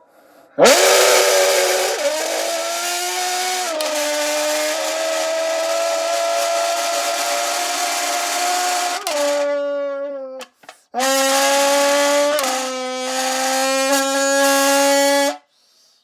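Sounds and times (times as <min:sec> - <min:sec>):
mouth engine imitation buzzing: 0:00.6 - 0:09.6, 0:10.4 - 0:15.4.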